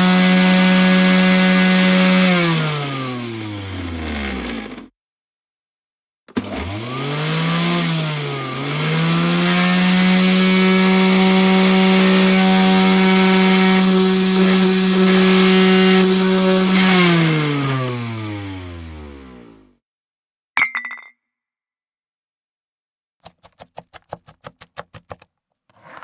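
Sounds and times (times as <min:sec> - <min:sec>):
kitchen appliance motor running: 0:00.0 - 0:04.9, 0:06.3 - 0:19.8.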